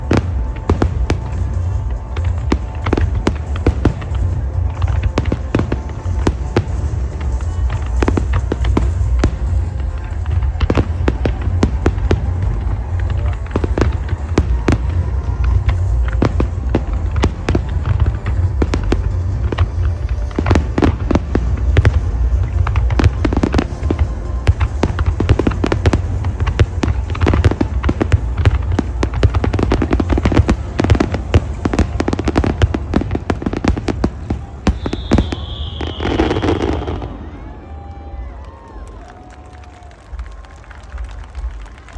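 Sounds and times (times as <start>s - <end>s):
fireworks bangs and crackles: 0.0s - 41.9s
whistling firework shell: 34.6s - 39.3s.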